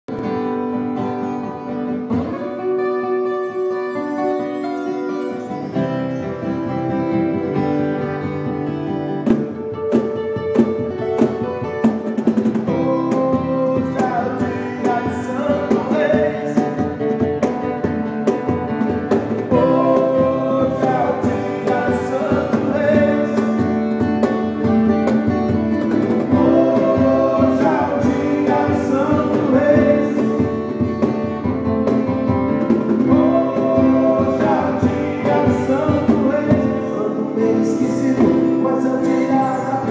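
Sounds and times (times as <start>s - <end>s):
acoustic guitar music: 0.1s - 39.9s.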